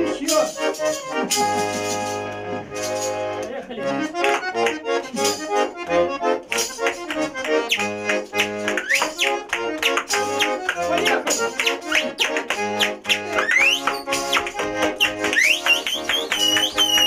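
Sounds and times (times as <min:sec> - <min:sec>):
accordion playing folk tune: 0:00.0 - 0:17.0
spoons clacking in rhythm: 0:00.0 - 0:17.0
sliding whistled notes: 0:07.6 - 0:10.6, 0:11.9 - 0:17.0.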